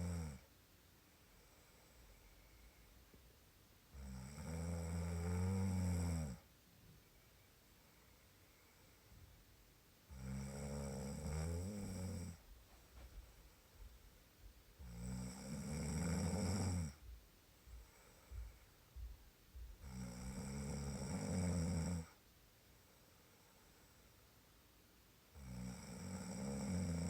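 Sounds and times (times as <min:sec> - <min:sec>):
snoring: 0:00.0 - 0:00.5, 0:03.9 - 0:06.5, 0:10.1 - 0:12.4, 0:14.8 - 0:17.0, 0:19.8 - 0:22.2, 0:25.3 - 0:27.0
soft breath noises: 0:01.0 - 0:03.5, 0:06.4 - 0:10.2, 0:11.1 - 0:24.6.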